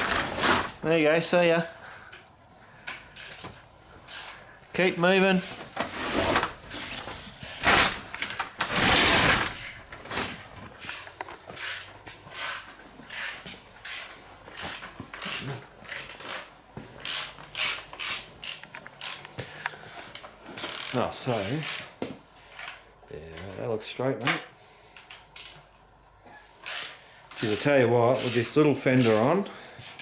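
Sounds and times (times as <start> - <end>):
ratchet wrench clicking: 26.6 - 29.2.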